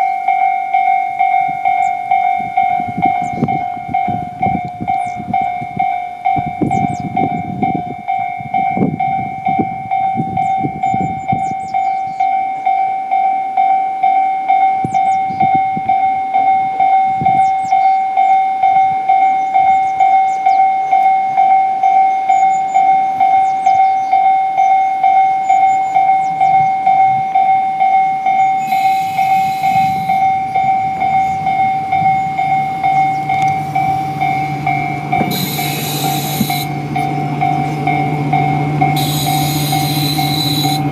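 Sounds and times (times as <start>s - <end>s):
low train rumble: 0.0s - 40.9s
electronic warning tone pulsing: 28.2s - 40.9s.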